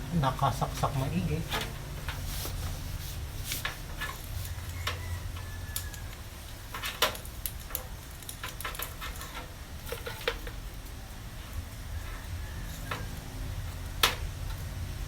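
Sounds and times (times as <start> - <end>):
steady low hum: 0.0 - 5.4.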